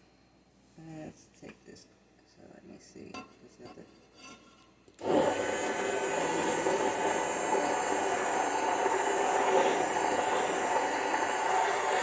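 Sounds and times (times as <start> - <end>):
immersion blender running: 5.0 - 12.0.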